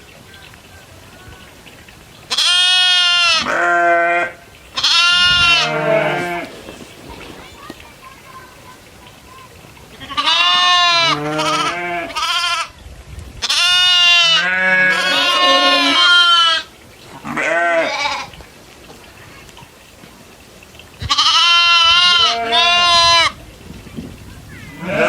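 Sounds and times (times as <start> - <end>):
goats bleating: 2.3 - 7.9, 9.9 - 12.7, 13.4 - 18.3, 21.0 - 23.4, 24.7 - 25.0.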